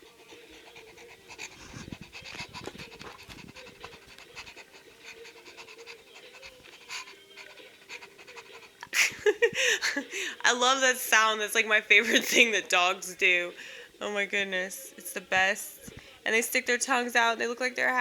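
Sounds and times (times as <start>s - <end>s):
rapid panting: 0.0s - 14.0s.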